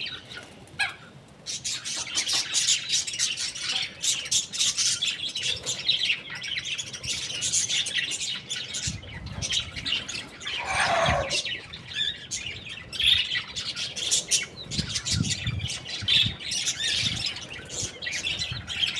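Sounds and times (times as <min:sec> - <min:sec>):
chicks chirping: 0:10.5 - 0:11.6.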